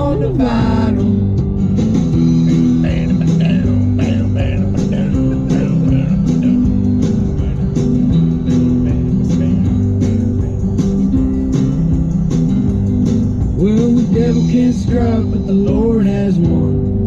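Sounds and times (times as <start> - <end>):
person singing: 0.0 - 1.2, 2.6 - 7.7, 8.8 - 11.0, 13.6 - 17.0
guitar and bass: 0.0 - 17.0
steady drum beat: 0.0 - 17.0.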